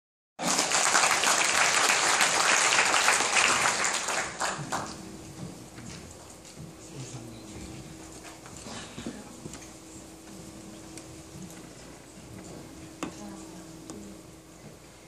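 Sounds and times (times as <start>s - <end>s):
audience applauding: 0.4s - 5.1s.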